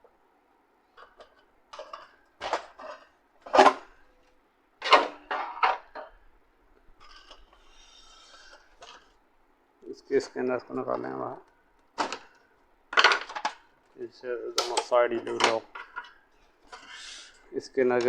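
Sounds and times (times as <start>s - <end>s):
plastic parts clattering and knocking: 1.0s - 4.0s, 4.8s - 6.2s, 6.8s - 9.2s, 10.7s - 16.9s.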